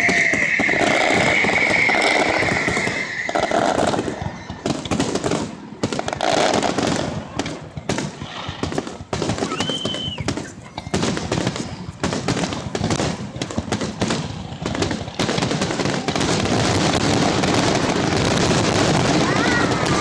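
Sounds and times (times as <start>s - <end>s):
firework whistle: 0.0s - 4.8s, 8.2s - 10.6s
fireworks bangs and crackles: 0.0s - 20.0s.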